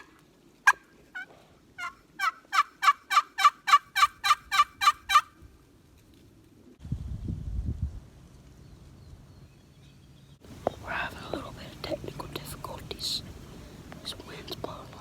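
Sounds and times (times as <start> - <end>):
turkey yelping: 0.0 - 5.4.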